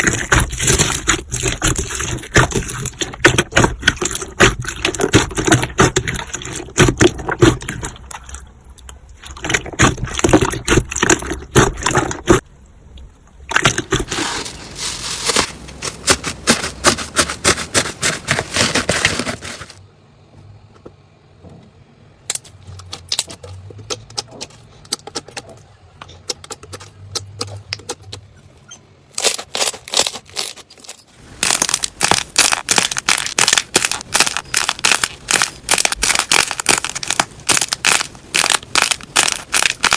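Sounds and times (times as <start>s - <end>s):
slime crackling and popping: 0.0s - 8.2s, 22.3s - 25.5s, 29.2s - 39.9s.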